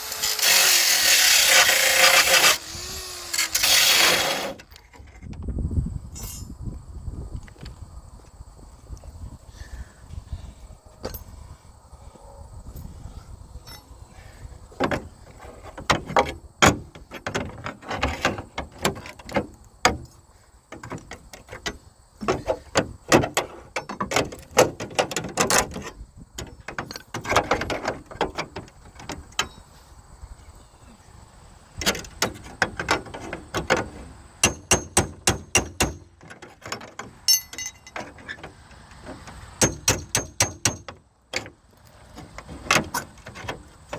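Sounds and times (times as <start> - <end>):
irregular knocks and clatters: 20.7 - 29.6.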